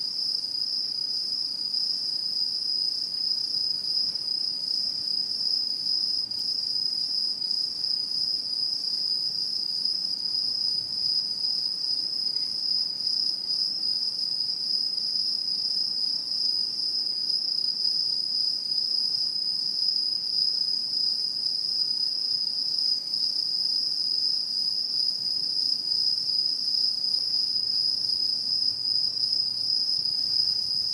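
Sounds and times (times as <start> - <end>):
insects trilling: 22.7 - 30.9.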